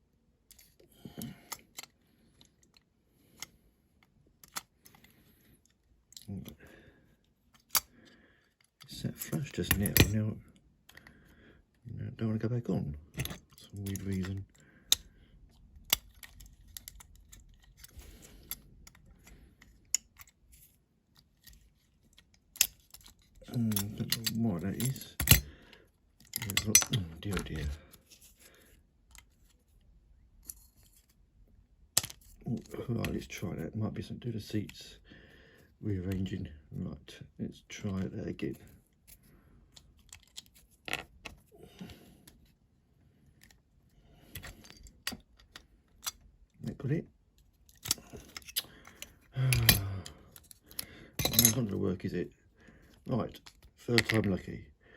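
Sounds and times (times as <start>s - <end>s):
toy car parts clicking and tapping: 4.4s - 5.1s, 7.5s - 10.2s, 13.2s - 20.6s, 21.2s - 25.5s, 32.0s - 32.4s, 44.3s - 46.3s, 47.4s - 51.6s.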